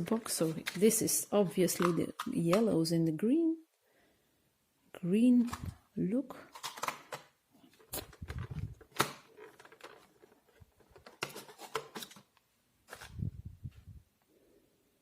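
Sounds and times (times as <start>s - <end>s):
plastic trays clicking and knocking: 1.6s - 2.7s, 6.5s - 12.3s.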